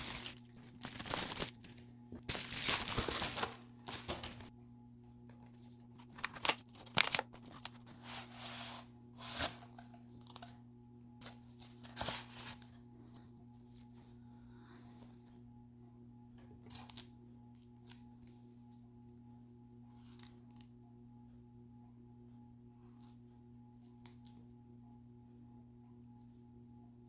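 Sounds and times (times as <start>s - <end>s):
packaging crinkling and tearing: 0.0s - 4.5s, 6.0s - 7.9s
faint low hum: 0.0s - 27.0s.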